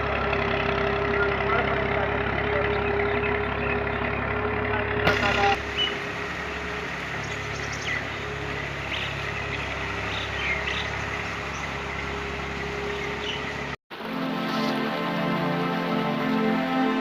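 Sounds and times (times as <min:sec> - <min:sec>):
engine idling: 0:00.0 - 0:13.8
birds chirping: 0:00.1 - 0:13.8
background music: 0:13.9 - 0:17.0.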